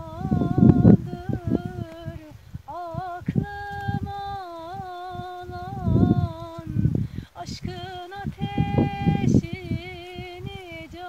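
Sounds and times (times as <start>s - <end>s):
high voice singing slow melody: 0.0s - 11.0s
wind buffeting microphone: 0.0s - 11.0s.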